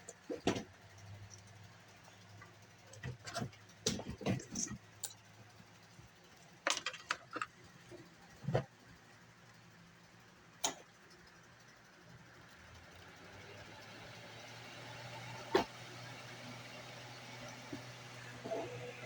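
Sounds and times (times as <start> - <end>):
sharp clicks and knocks: 2.3 - 5.2, 6.6 - 7.6.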